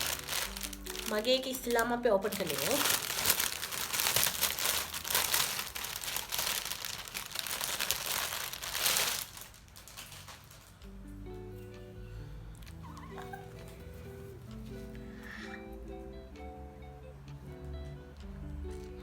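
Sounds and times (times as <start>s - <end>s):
packaging crinkling and rustling: 0.0s - 10.8s.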